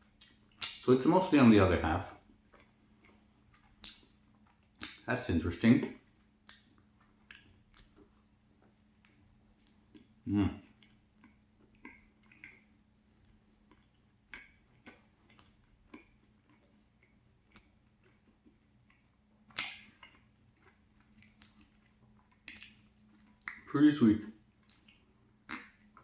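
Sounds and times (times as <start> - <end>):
chewing flaky pastry: 0.0 - 26.0.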